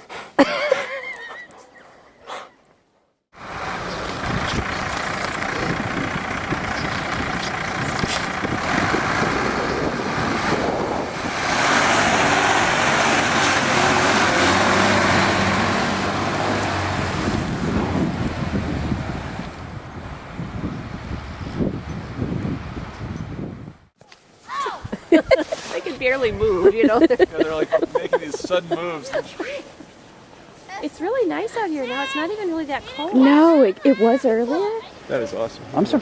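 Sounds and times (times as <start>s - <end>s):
heavy truck engine under load: 3.4s - 23.0s.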